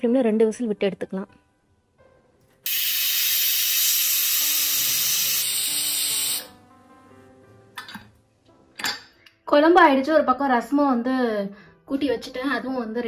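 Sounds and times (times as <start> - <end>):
faint background music: 0.0 - 13.0
pressure cooker whistle hissing: 2.6 - 6.6.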